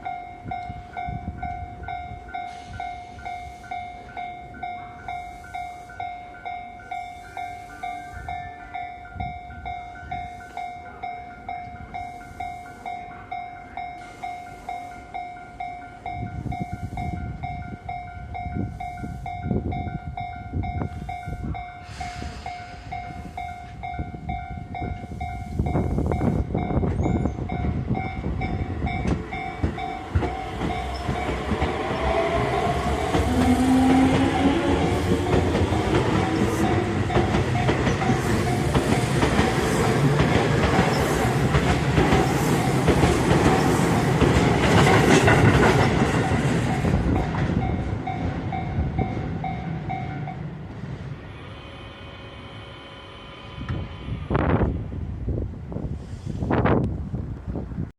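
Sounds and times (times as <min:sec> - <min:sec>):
train wheels clattering over rails: 0:26.7 - 0:50.0
train motor whine: 0:28.2 - 0:43.3, 0:50.9 - 0:55.1.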